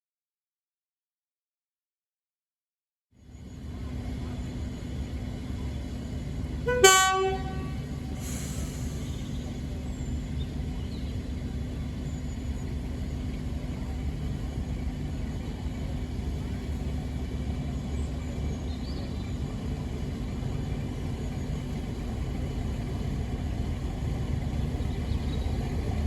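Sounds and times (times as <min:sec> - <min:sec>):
diesel locomotive engine running: 0:03.2 - 0:26.0
locomotive horn blast: 0:06.6 - 0:08.3
brief hiss: 0:08.1 - 0:09.3.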